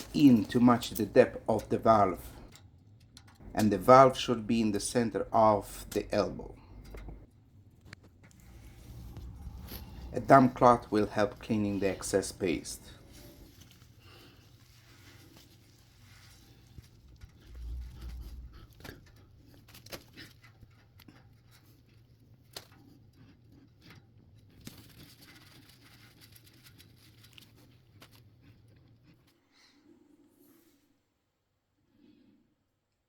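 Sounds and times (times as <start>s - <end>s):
cloth rustling: 0.0s - 2.5s, 8.3s - 20.0s
steady low hum: 0.0s - 19.8s
light clicks and taps: 5.8s - 9.8s.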